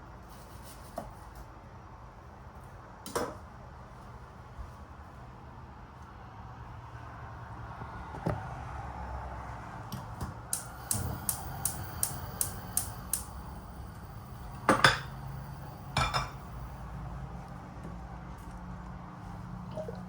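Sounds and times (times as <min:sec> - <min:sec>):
sharp even clicks: 0:10.5 - 0:14.4
dishes clanking: 0:14.6 - 0:16.7.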